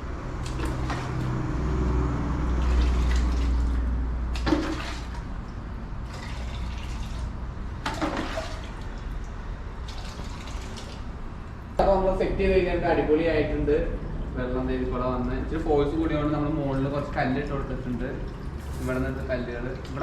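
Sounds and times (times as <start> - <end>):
water pouring into basin: 0.4 - 1.4, 2.5 - 11.2, 17.2 - 20.0.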